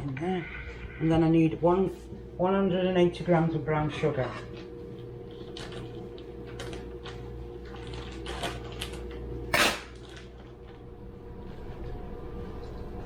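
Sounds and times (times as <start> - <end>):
utensils scraping and clinking: 3.9 - 4.7.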